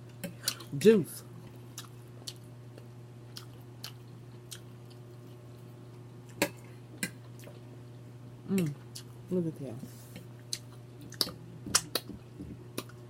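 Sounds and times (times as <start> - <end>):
person chewing with wet smacking: 1.4 - 7.6, 8.5 - 9.2, 10.2 - 13.0.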